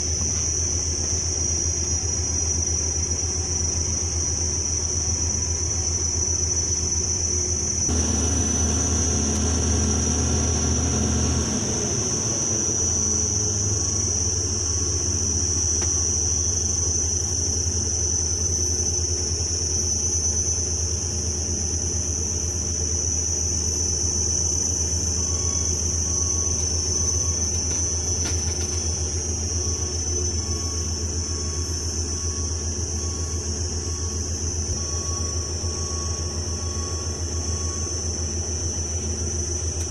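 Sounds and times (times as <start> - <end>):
diesel engine drone: 0.0 - 39.9
high-pitched whine: 2.0 - 21.2.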